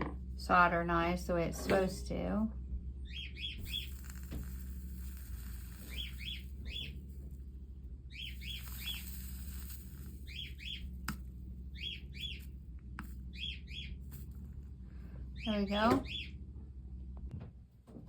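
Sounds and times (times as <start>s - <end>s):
steady low hum: 0.0s - 18.0s
bird chirping falling notes: 3.0s - 7.3s, 8.1s - 14.3s, 15.3s - 16.4s.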